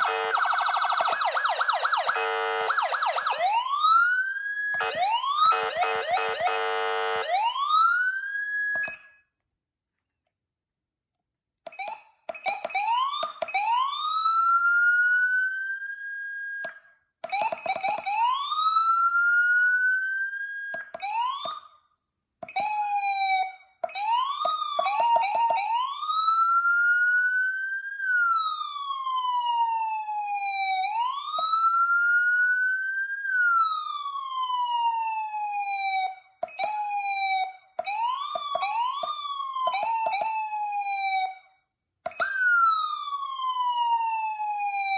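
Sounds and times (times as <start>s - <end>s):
electronic siren wailing and chirping: 0.0s - 3.7s.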